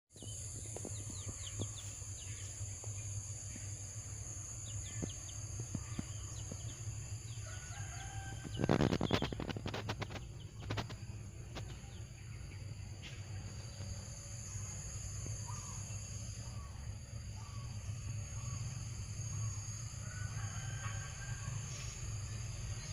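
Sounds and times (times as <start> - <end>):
small birds chirping: 0.1 - 20.2
steady low hum: 0.2 - 22.9
rustling or fluttering: 7.4 - 11.8.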